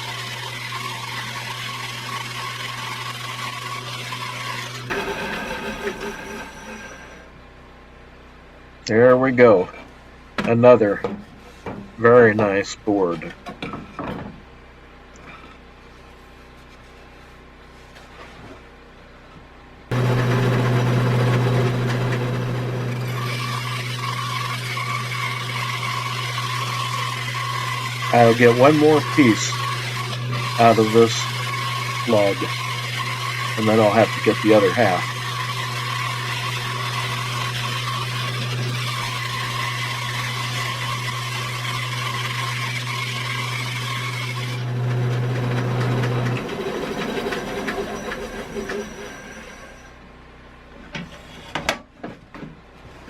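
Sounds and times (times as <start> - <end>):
bandsaw motor hum: 0.0 - 7.4, 19.9 - 50.1
high steady whine: 19.9 - 26.4.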